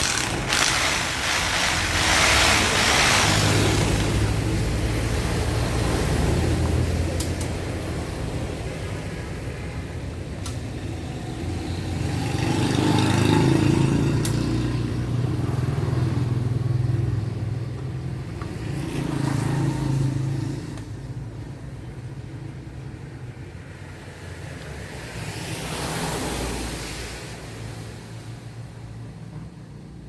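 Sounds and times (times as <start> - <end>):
sharp clicks: 0.0 - 4.2
electric drill motor running: 0.0 - 4.6.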